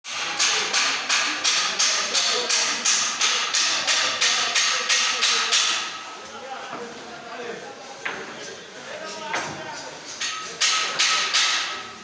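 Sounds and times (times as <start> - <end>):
rapid hammering: 0.1 - 5.9, 10.2 - 11.8.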